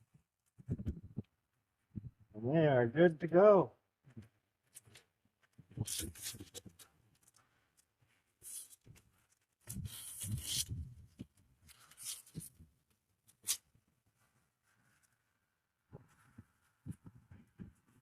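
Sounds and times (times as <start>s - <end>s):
rustling and knocking of handling: 15.9s - 18.0s.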